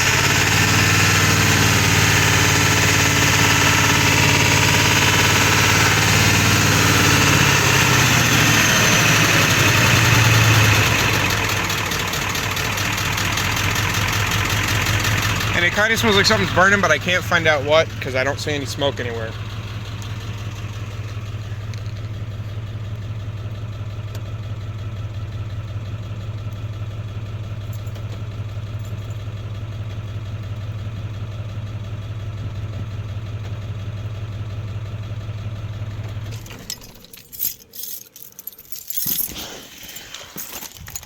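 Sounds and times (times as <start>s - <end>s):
diesel engine idling roughly: 0.0s - 36.5s
sharp rattles and knocks: 36.1s - 41.0s.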